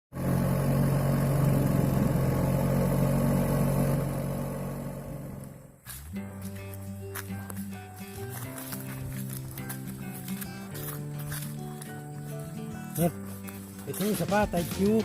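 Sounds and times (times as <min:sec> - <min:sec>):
small boat engine running: 0:00.1 - 0:05.8
music: 0:05.8 - 0:15.0.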